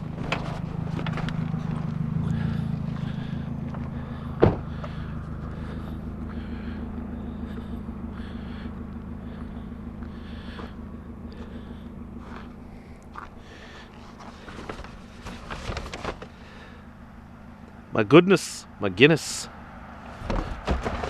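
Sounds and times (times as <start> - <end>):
handling knocks and rustles: 0.0 - 2.1, 14.0 - 16.4, 20.2 - 21.0
vehicle engine running: 0.0 - 21.0.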